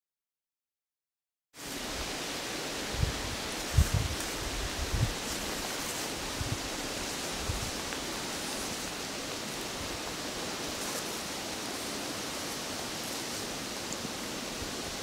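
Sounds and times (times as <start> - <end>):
wind rushing on microphone: 1.8 - 10.5.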